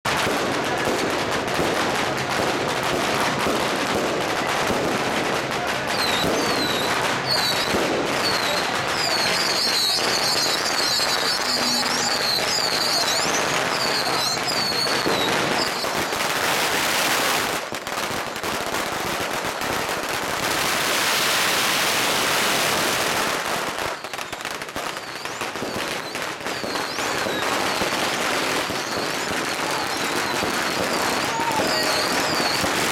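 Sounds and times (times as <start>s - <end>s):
firecrackers crackling: 0.0s - 32.9s
fireworks bangs: 0.0s - 32.9s
high whistling squeals: 6.6s - 15.9s.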